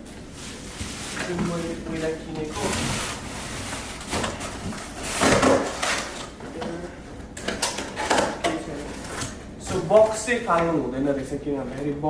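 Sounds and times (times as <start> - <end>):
cardboard scraping and rustling: 0.4 - 6.8.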